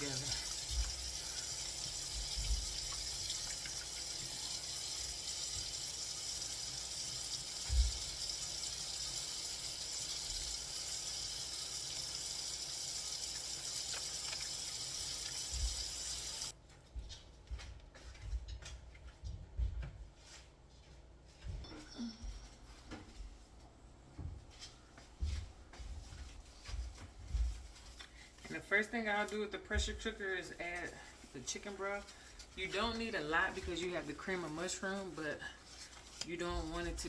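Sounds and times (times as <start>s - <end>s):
hands washing under water: 0.0s - 16.5s
faucet running: 0.0s - 16.6s, 29.8s - 37.0s.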